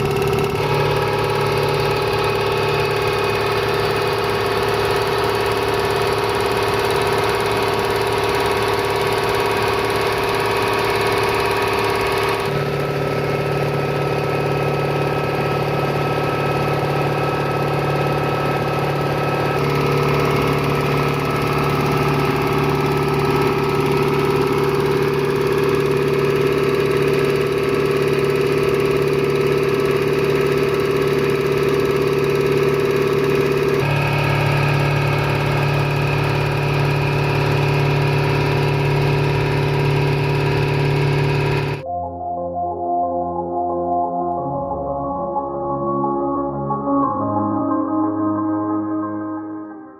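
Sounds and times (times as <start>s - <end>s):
air compressor humming: 0.0s - 41.8s.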